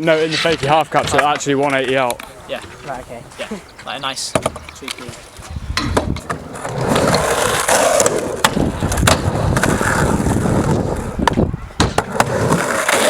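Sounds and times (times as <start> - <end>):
skateboard wheels rolling on concrete: 0.0 - 13.0
skateboard clacks: 3.8 - 13.0.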